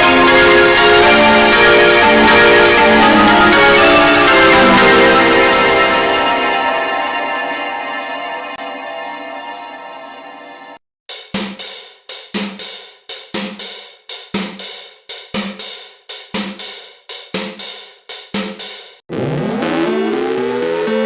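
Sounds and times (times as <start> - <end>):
rising siren-like sweep: 0.0 - 10.8, 19.1 - 21.0.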